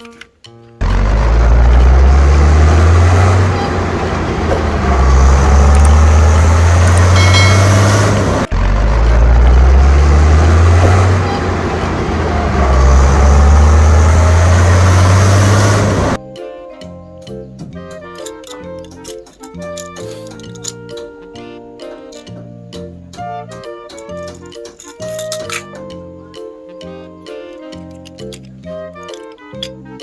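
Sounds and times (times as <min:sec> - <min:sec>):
loud vehicle engine: 0:00.8 - 0:16.2.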